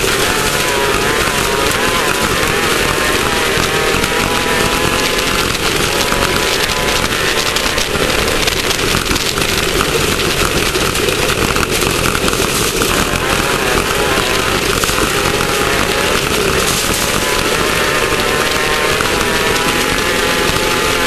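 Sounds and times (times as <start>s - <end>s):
car rattling over rough ground: 0.0s - 21.0s
race car engine running hard: 0.0s - 21.0s.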